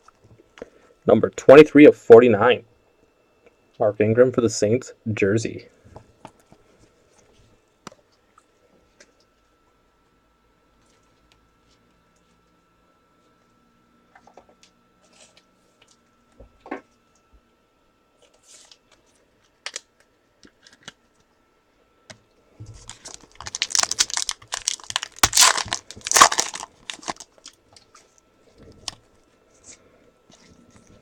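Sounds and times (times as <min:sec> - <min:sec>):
wrapper tearing and crinkling: 0:22.8 - 0:27.6.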